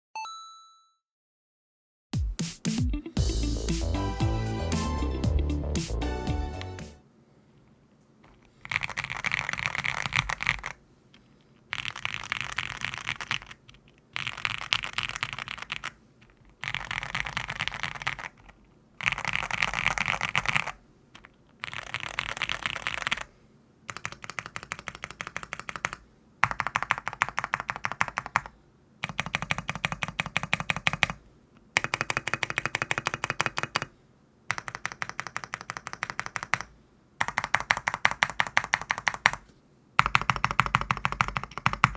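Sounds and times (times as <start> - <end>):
mechanical keyboard typing: 8.6 - 10.8, 11.7 - 16.0, 16.6 - 23.3, 23.9 - 33.9, 34.5 - 39.4, 40.0 - 41.9.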